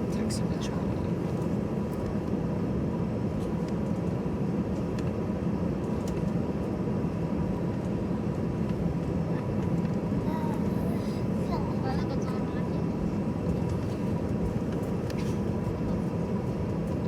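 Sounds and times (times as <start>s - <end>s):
jet engines low rumble: 0.0s - 17.0s.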